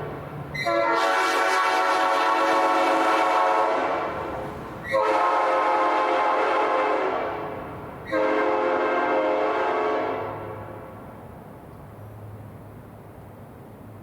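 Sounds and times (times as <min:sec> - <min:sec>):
train horn chord blasts: 0:00.6 - 0:11.0.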